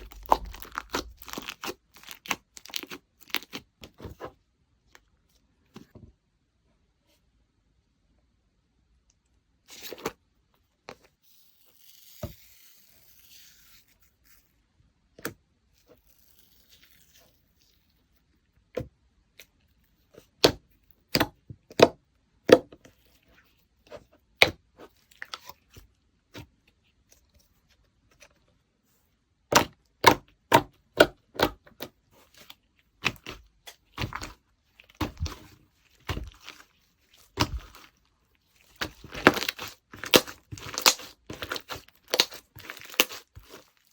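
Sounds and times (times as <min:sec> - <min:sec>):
slime squishing with clicking pops: 0:29.5 - 0:32.0, 0:38.8 - 0:43.6.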